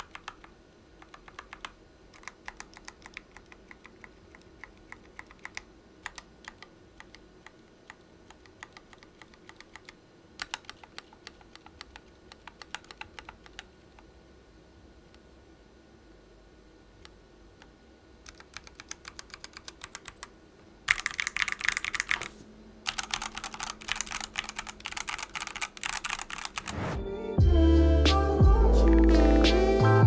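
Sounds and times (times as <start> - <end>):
mechanical keyboard typing: 0.0 - 14.0, 18.2 - 20.3, 20.9 - 27.0.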